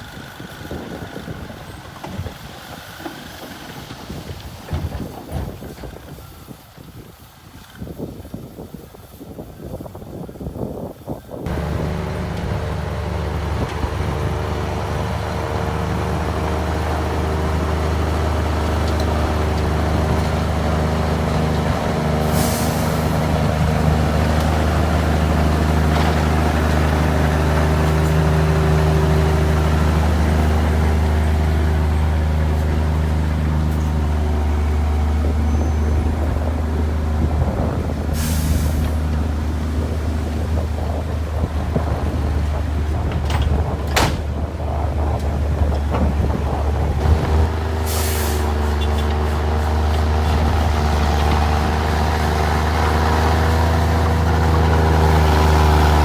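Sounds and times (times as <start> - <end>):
diesel engine under load: 0.0 - 6.9, 11.4 - 56.0
short hisses: 22.2 - 23.2, 47.9 - 48.5.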